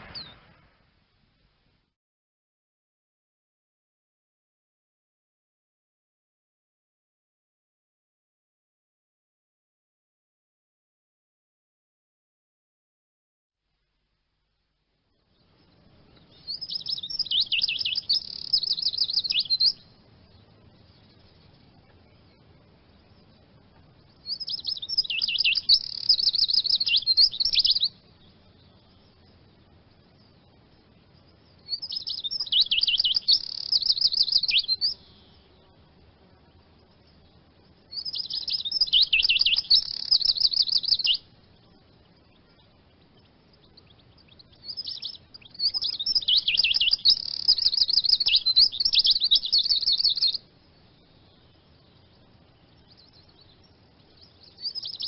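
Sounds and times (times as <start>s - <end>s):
bird twittering song: 0.0s - 0.6s, 15.2s - 55.0s.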